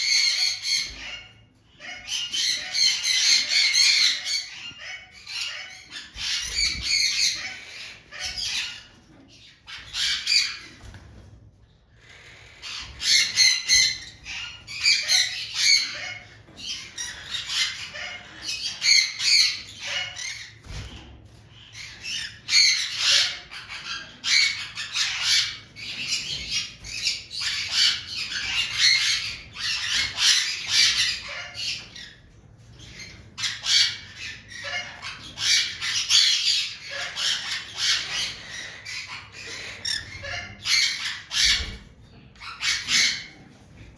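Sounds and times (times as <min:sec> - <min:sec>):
birds squawking: 0:00.0 - 0:43.9.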